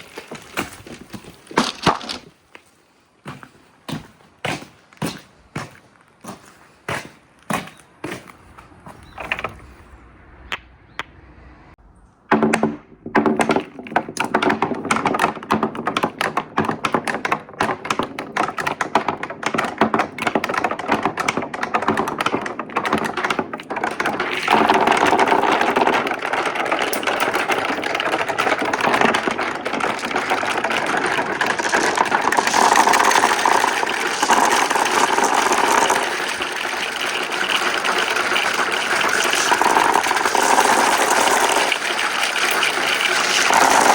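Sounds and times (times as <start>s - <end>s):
marbles clattering down wooden run: 0.0s - 2.3s, 12.4s - 43.9s.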